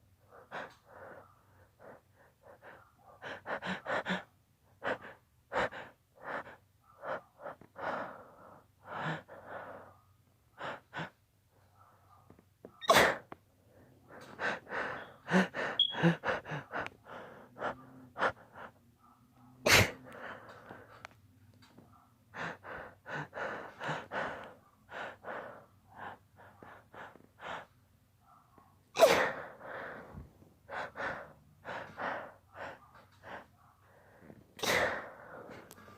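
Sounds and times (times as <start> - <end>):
quick gasping breaths: 0.0 - 11.2, 12.8 - 18.9, 19.6 - 27.9, 29.0 - 35.9
person sneezing: 12.8 - 13.3, 19.7 - 20.0, 29.0 - 29.6, 34.6 - 35.1.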